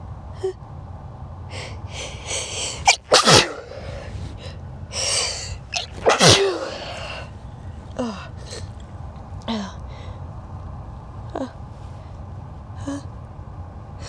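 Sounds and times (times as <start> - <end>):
noisy intake of breath: 1.5 - 7.4
person sneezing: 2.7 - 4.0, 5.7 - 7.2.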